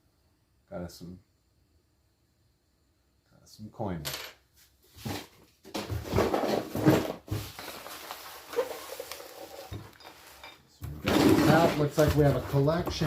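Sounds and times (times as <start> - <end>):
rummaging through small objects: 5.8 - 13.0.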